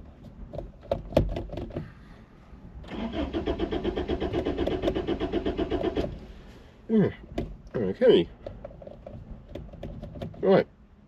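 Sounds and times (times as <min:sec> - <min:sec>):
engine cranked by starter: 0:02.8 - 0:06.4.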